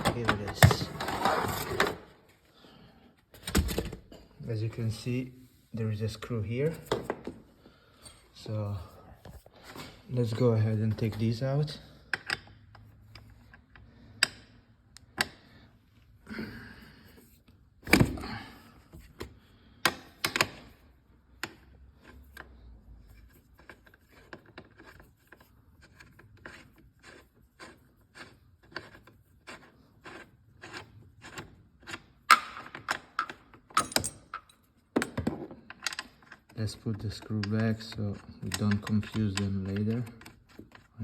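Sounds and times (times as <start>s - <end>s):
knocks of tool handling: 32.3s - 36.5s.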